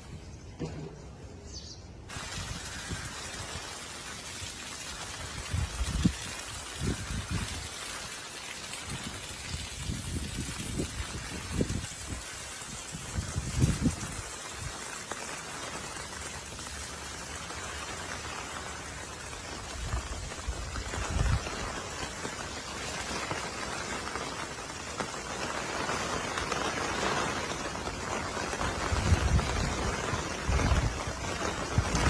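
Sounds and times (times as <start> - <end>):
rain pattering: 2.1 - 32.0
wind rumbling on microphone: 4.5 - 14.9, 19.6 - 22.2, 26.2 - 32.0.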